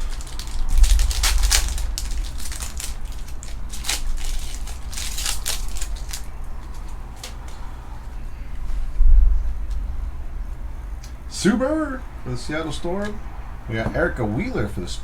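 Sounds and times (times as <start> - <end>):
plastic wrapper crinkling: 0.0 - 7.6.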